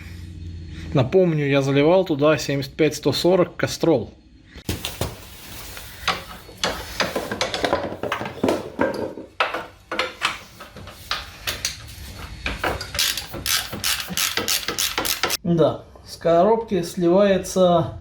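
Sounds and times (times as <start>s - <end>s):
hand tool clicking on metal: 13.0s - 15.4s.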